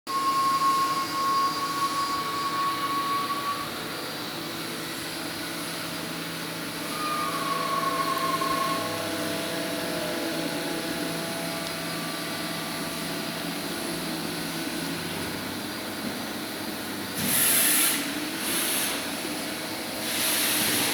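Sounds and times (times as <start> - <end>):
high motor whine: 0.1 - 17.1.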